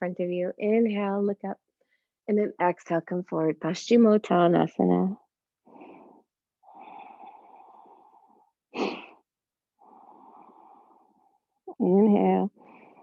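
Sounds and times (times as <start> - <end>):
person breathing deeply: 5.7 - 9.2, 9.8 - 11.5.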